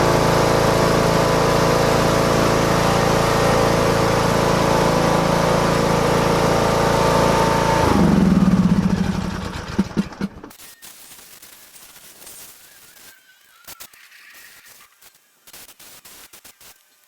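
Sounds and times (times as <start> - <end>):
lawn mower engine running: 0.0 - 10.5.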